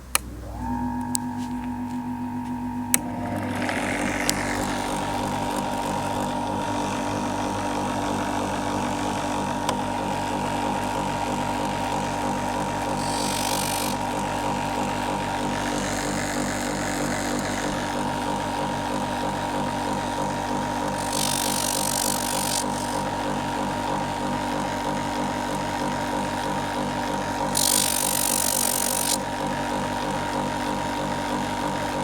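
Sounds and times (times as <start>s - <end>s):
machine switch click: 0.0s - 0.3s
electric motor humming: 0.0s - 32.0s.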